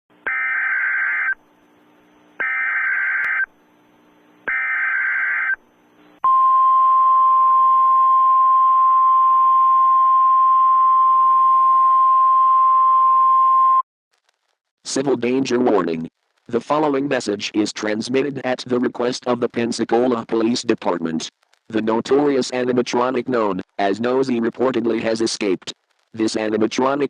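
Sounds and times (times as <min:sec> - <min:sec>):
screechy digital data tones: 0:00.3 - 0:01.4, 0:02.4 - 0:03.5, 0:04.5 - 0:05.6.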